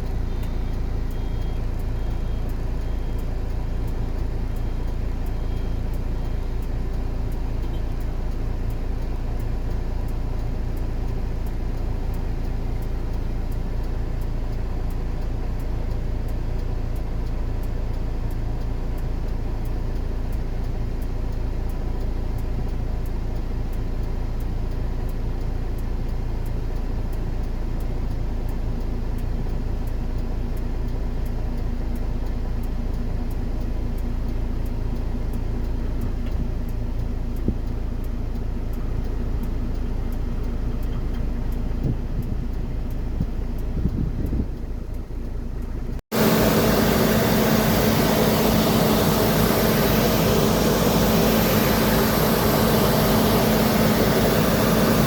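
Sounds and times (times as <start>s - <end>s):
low rumble of engines: 0.0s - 55.0s
aircraft engine humming: 44.6s - 55.0s.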